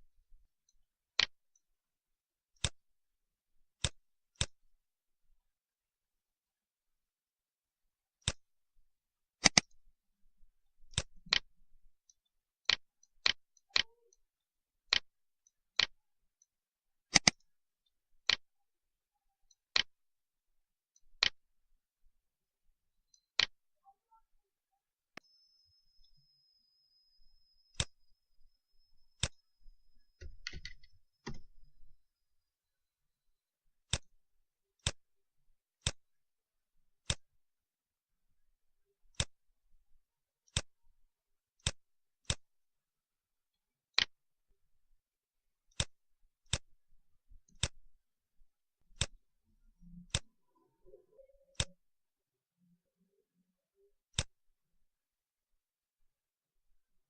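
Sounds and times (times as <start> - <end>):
computer mouse clicking: 2.6 - 2.8, 3.8 - 4.6, 8.2 - 8.5, 9.4 - 9.8, 10.9 - 11.5, 12.1 - 14.2, 14.9 - 15.1, 15.8 - 16.5, 17.1 - 17.5, 18.2 - 18.5, 19.5 - 19.9, 21.0 - 21.4, 23.1 - 23.6, 29.2 - 29.4, 30.2 - 31.7, 33.8 - 34.2, 34.8 - 35.0, 35.8 - 36.1, 37.0 - 37.3, 39.1 - 39.4, 40.5 - 40.8, 41.6 - 42.5, 45.7 - 46.7, 47.4 - 47.9, 48.9 - 49.2, 49.8 - 51.8, 54.1 - 54.4
faint high whine: 25.1 - 32.0.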